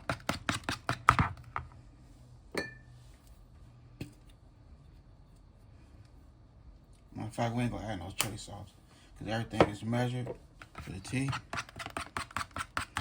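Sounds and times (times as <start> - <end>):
ringing clink against a bowl: 2.6 - 2.9.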